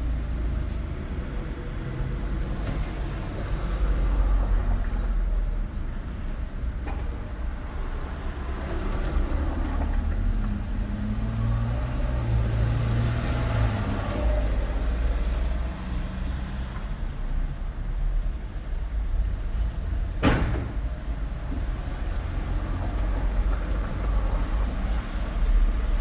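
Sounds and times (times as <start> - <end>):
low rumble of traffic: 0.0 - 26.0
vehicle passing close by: 7.9 - 16.7.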